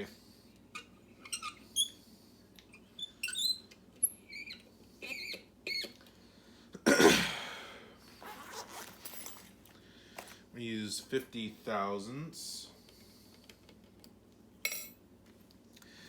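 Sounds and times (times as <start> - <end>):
metal squeaks and clicks: 0.7 - 2.0, 2.6 - 6.0.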